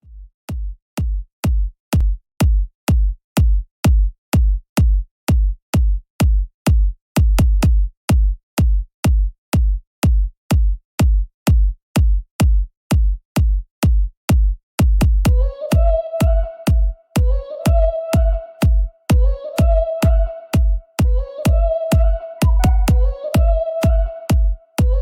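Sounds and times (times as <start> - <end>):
drum machine kick drum: 0.0 - 25.0
electronic music: 19.6 - 25.0.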